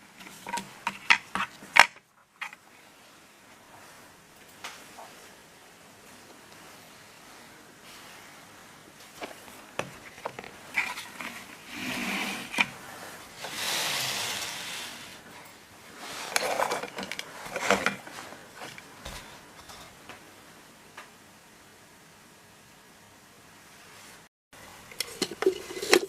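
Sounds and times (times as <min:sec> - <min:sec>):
rustling and scraping: 0:00.0 - 0:05.4, 0:06.0 - 0:20.2, 0:24.9 - 0:26.0
clatter of materials: 0:16.2 - 0:20.0.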